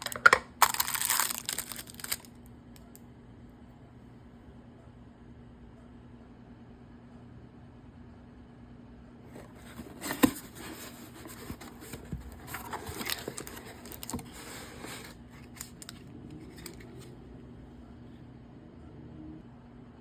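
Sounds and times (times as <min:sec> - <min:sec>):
packaging scratching and scraping: 0:00.0 - 0:02.3, 0:09.3 - 0:17.1
packaging snapping: 0:00.0 - 0:02.3, 0:09.4 - 0:16.9.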